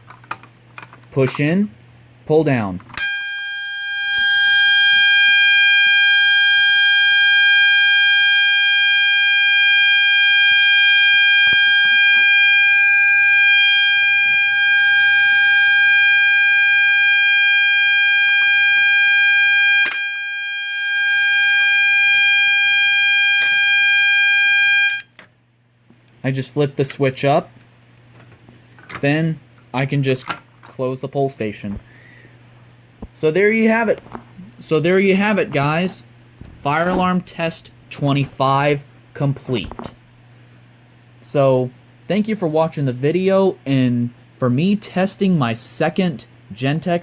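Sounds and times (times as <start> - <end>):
fire alarm steady tone: 3.0 - 25.1.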